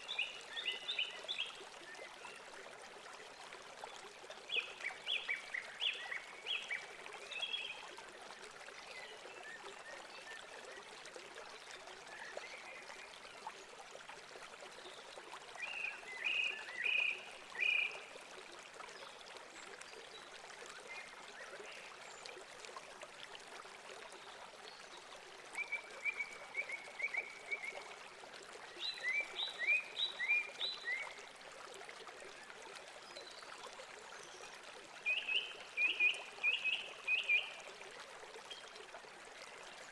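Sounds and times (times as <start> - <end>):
running water: 0.0 - 39.9.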